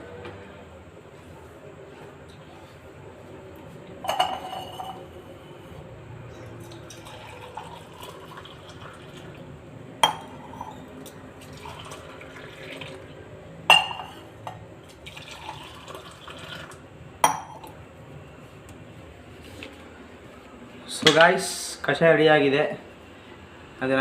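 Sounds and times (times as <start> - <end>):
liquid pouring into a glass: 6.6 - 9.4, 11.4 - 13.2, 14.9 - 16.8.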